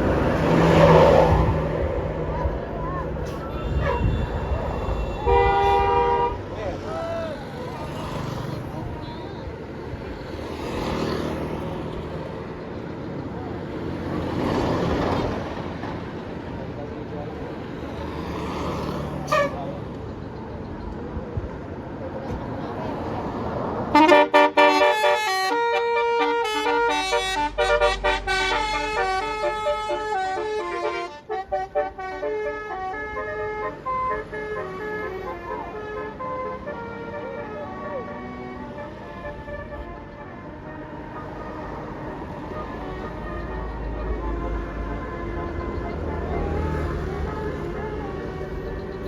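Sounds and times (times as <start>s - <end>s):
vehicles passing close by: 0.0s - 49.0s
multi-trumpet air horn tune: 3.4s - 6.4s, 23.9s - 39.9s.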